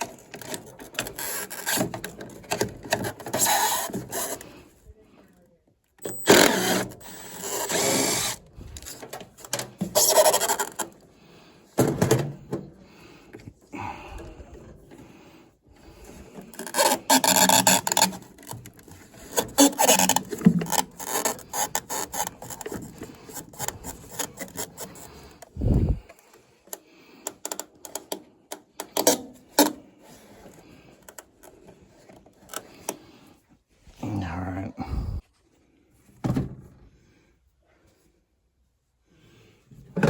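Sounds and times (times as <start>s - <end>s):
scraping and rubbing metal parts: 9.8s - 10.9s.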